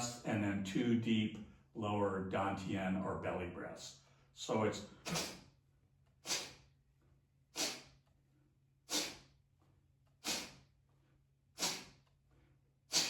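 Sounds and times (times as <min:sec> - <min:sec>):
forceful exhales through nose: 0:05.0 - 0:05.5, 0:06.2 - 0:06.8, 0:07.5 - 0:08.0, 0:08.8 - 0:09.4, 0:10.2 - 0:10.8, 0:11.6 - 0:12.1.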